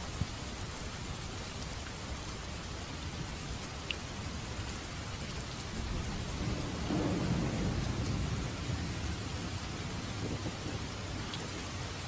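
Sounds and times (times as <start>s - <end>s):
steady rain: 0.0s - 12.0s
thunder rumble: 5.2s - 12.0s.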